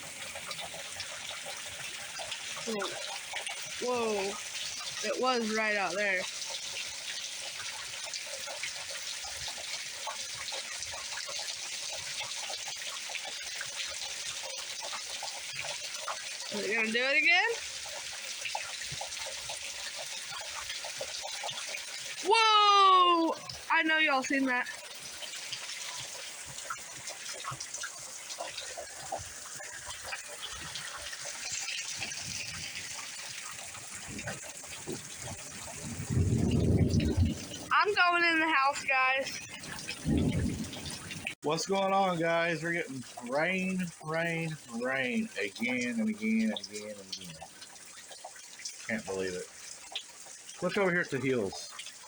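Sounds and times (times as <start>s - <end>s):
drops splashing and dripping: 0.0s - 52.0s
steady rain falling: 0.0s - 52.0s.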